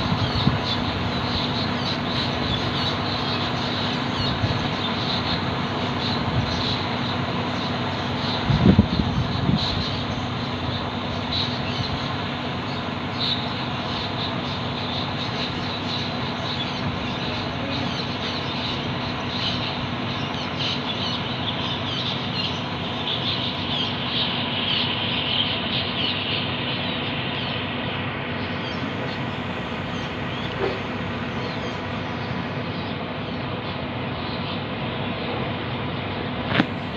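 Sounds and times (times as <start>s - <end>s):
small birds chirping: 0.0s - 35.3s
steady background hum: 0.0s - 36.9s.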